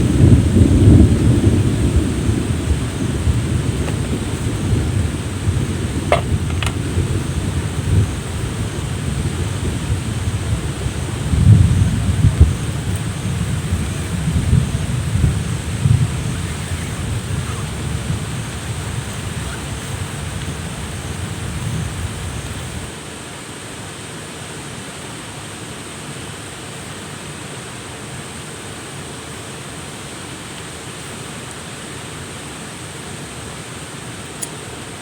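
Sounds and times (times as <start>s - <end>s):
thunder rumbling: 0.0s - 22.9s
water hissing: 0.0s - 22.9s.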